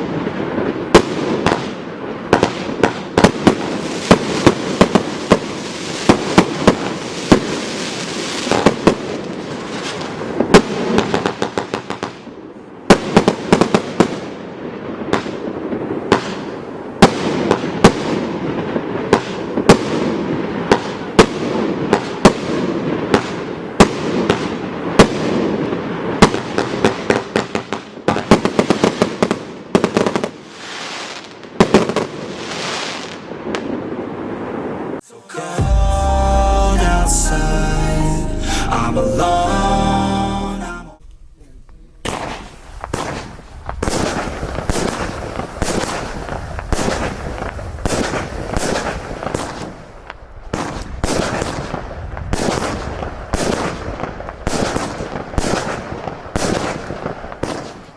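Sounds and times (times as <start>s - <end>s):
firework bangs: 0.0s - 12.2s, 42.0s - 49.8s, 50.5s - 57.9s
firework crackling hiss: 30.5s - 31.3s, 42.1s - 50.0s.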